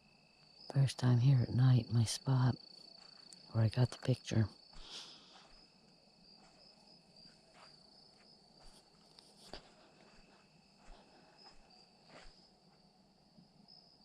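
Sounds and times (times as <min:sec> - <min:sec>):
night insects trilling: 0:00.0 - 0:14.0
footsteps in undergrowth: 0:04.7 - 0:05.7, 0:06.4 - 0:12.5.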